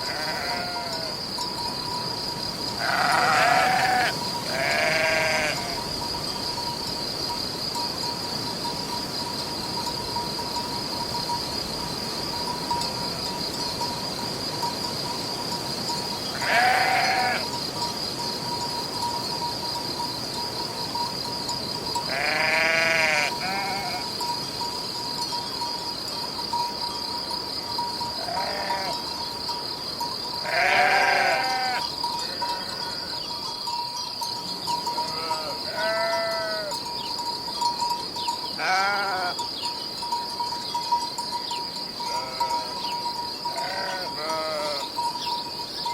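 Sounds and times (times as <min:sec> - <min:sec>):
sheep bleating: 0:00.0 - 0:01.1, 0:02.8 - 0:05.8, 0:16.3 - 0:17.4, 0:22.1 - 0:24.0, 0:28.2 - 0:29.0, 0:30.4 - 0:31.8, 0:35.0 - 0:36.7, 0:38.6 - 0:39.4, 0:42.1 - 0:42.8, 0:43.5 - 0:44.9.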